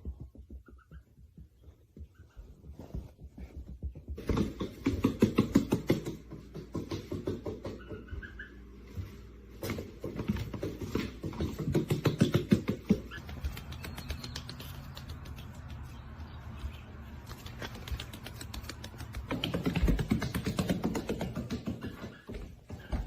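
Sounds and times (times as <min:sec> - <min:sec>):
duckling feet pattering: 0:00.0 - 0:23.0.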